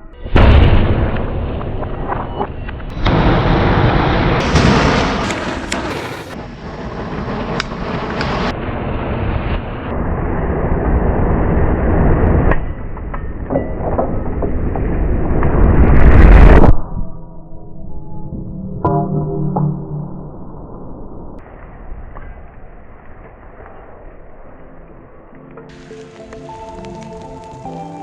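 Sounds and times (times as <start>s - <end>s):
matches burning with crackles: 5.2s - 6.4s, 25.7s - 28.0s.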